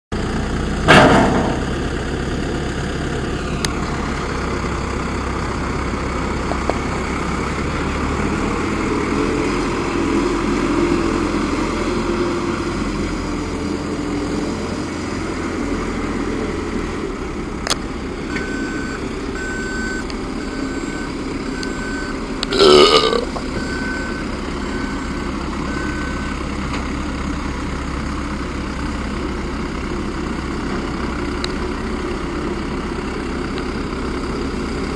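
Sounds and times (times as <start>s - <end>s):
diesel engine running: 0.1s - 34.9s
loud metal clank: 0.9s - 1.7s
high beeps: 18.3s - 26.3s.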